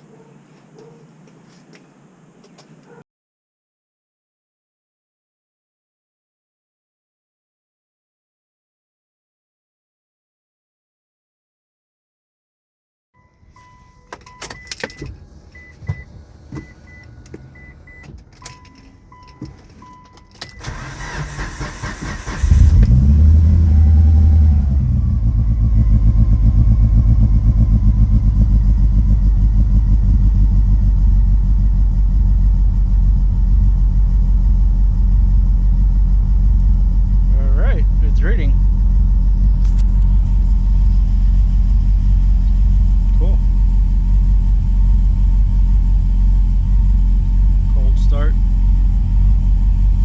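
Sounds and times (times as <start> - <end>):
car engine cranking and starting: 13.2 - 50.0
car engine idling: 13.4 - 50.0.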